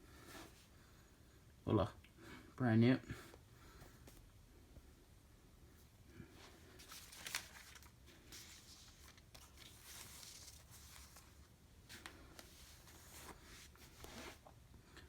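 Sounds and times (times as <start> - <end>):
packaging rustling and crinkling: 6.5 - 14.4.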